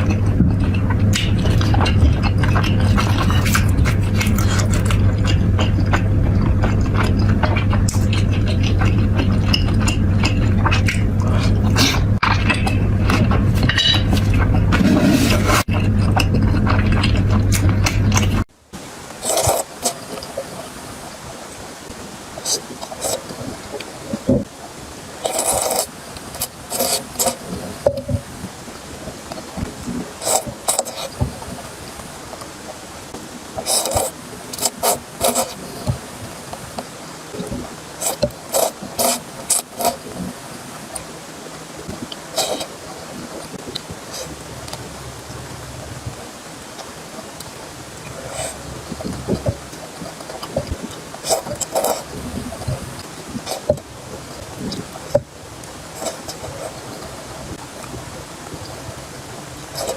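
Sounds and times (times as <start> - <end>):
mouth clicks and smacks: 0.0 - 18.4
person chewing food: 0.0 - 18.5, 19.1 - 20.7, 25.2 - 28.2, 29.3 - 31.5, 33.6 - 44.9, 46.7 - 57.2
low hum: 0.0 - 25.2.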